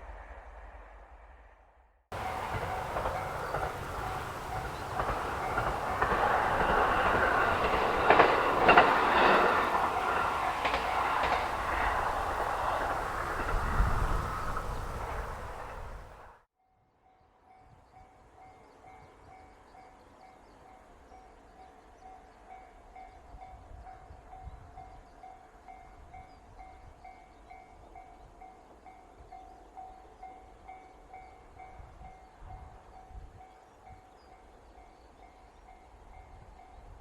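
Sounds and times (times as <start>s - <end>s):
level-crossing warning bell: 2.1s - 16.0s
wind rumbling on microphone: 2.1s - 16.4s.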